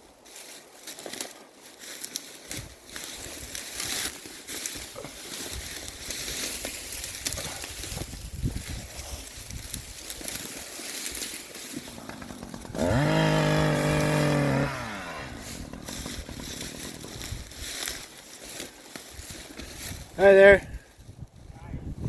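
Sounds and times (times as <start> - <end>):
wind buffeting microphone: 7.1 - 10.3, 12.0 - 17.8, 19.2 - 22.0.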